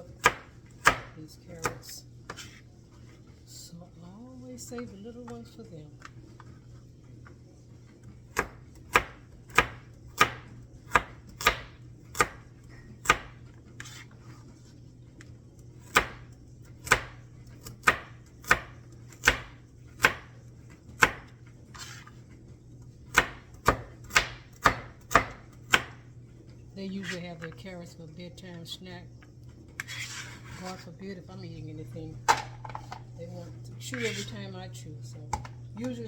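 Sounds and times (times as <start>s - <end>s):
knife chopping on cutting board: 0.2s - 2.6s, 8.3s - 12.4s, 13.0s - 14.0s, 15.8s - 22.1s, 23.1s - 26.0s.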